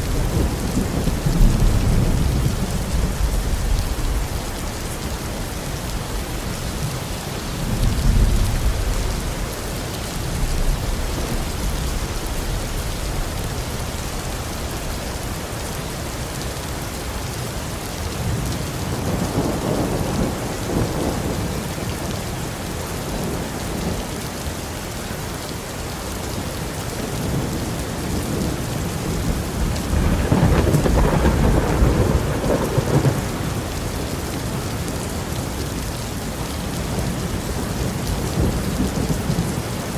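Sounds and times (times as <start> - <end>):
thunder rumbling: 0.0 - 13.8, 27.2 - 35.5
heavy rain falling: 0.0 - 39.9.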